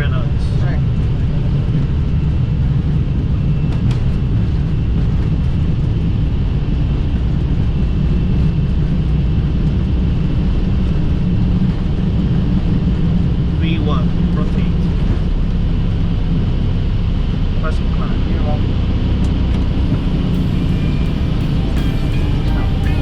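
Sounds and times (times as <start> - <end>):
aircraft cockpit low rumble: 0.0 - 23.0
faint steady high tone: 19.6 - 23.0.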